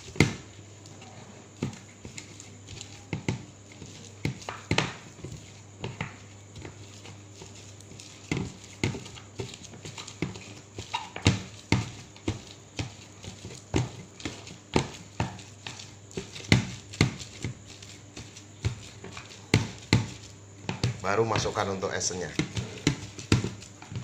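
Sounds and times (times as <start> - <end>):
dough wet slaps and knocks: 0.0 - 0.6, 1.6 - 24.0.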